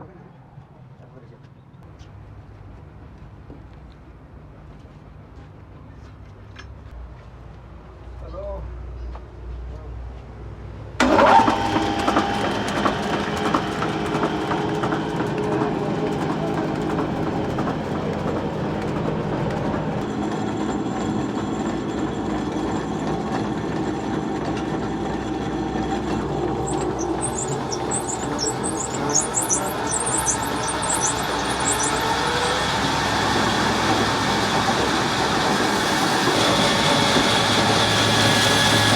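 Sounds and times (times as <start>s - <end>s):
high squeaks: 11.0s - 38.9s
sawmill machinery clatter and hum: 11.0s - 38.9s.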